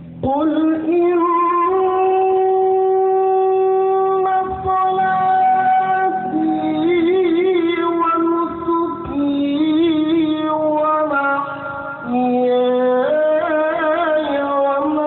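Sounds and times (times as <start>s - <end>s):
man reciting melodically: 0.2s - 15.0s.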